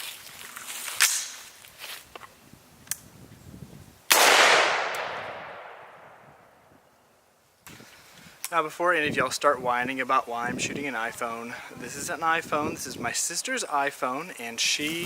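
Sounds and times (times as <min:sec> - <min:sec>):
rifle shot with echo: 0:04.1 - 0:06.3.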